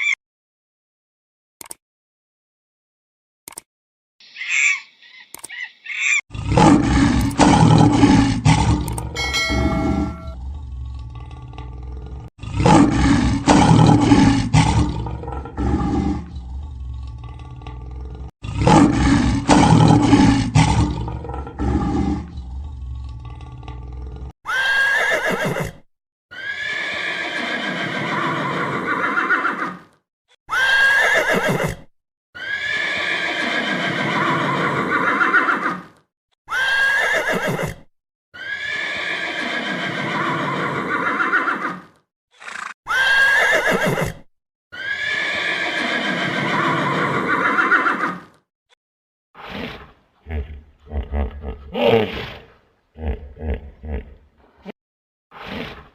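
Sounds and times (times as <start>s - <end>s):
horse whinnying: 24.5s - 29.9s, 30.5s - 35.9s, 36.5s - 48.3s.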